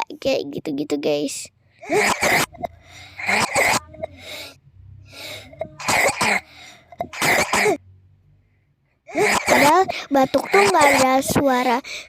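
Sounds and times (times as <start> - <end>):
person coughing: 1.9 - 4.4, 5.2 - 7.8, 9.1 - 11.3.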